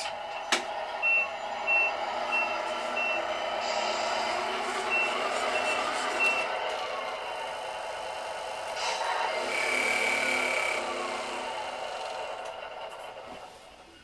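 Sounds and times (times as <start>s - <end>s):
reversing alarm beeping: 0.0s - 8.6s
truck engine running: 0.0s - 14.0s.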